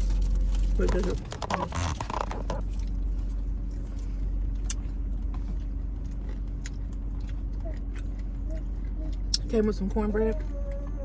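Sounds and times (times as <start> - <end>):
steady low hum: 0.0 - 11.0
chewing mouth clicks: 4.6 - 9.5.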